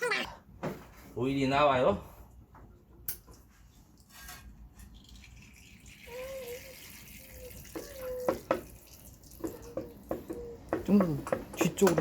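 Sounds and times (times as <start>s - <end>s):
oil trickling: 3.9s - 10.7s.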